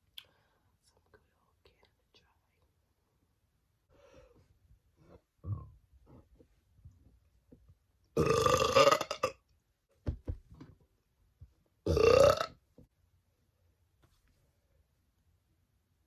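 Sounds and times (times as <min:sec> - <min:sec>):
woman burping loudly: 0:08.2 - 0:09.4, 0:11.9 - 0:12.6.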